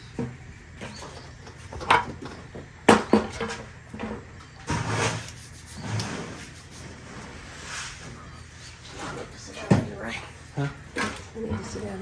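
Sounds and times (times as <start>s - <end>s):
short scraping rubs: 4.7s - 9.4s.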